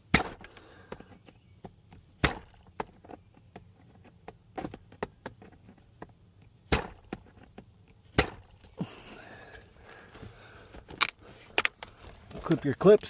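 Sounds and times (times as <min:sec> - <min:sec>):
faint rustling: 0:07.2 - 0:13.0.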